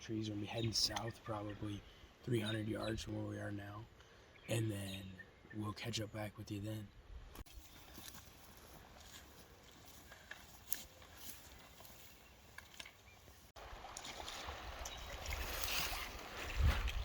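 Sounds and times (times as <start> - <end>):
footsteps rustling through woodland: 7.4 - 17.0.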